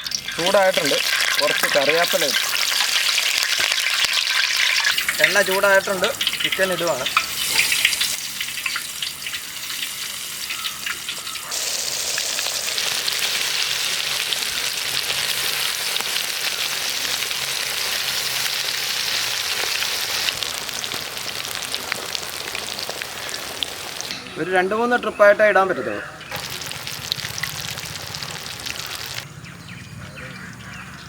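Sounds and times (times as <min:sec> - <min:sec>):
chicken deep-frying in oil: 0:00.0 - 0:24.1, 0:26.3 - 0:29.2.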